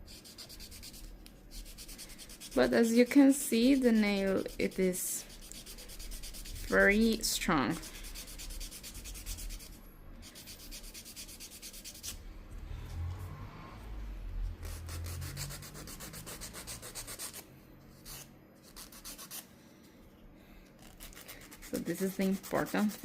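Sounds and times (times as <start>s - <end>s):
nail file rubbing fingernail: 0.1s - 2.8s, 3.5s - 7.0s, 7.7s - 12.2s, 14.6s - 17.4s, 18.0s - 19.4s, 20.8s - 23.0s.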